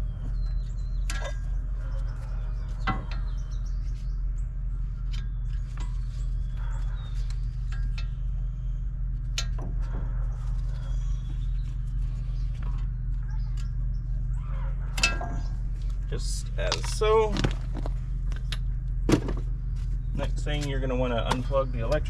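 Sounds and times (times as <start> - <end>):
steady low hum: 0.0 - 22.0
faint bird chirps: 10.0 - 15.7.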